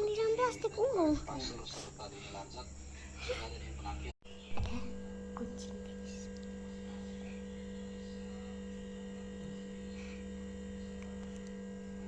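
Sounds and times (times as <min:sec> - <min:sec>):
low hum: 0:00.1 - 0:12.0.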